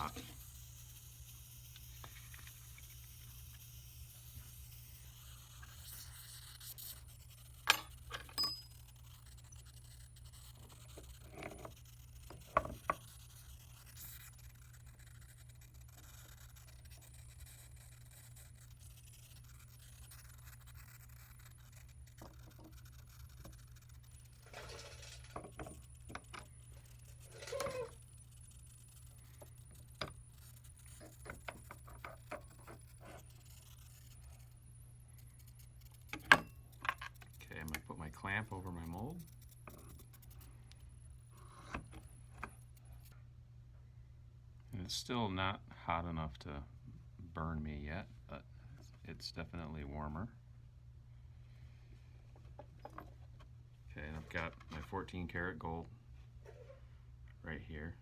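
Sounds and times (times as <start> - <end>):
steady low hum: 0.0 - 58.0
metal tools scraping: 7.4 - 10.0, 22.2 - 28.4.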